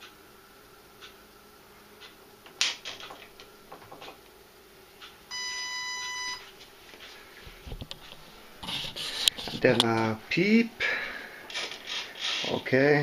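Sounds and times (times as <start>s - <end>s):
electronic beep: 5.3s - 6.4s.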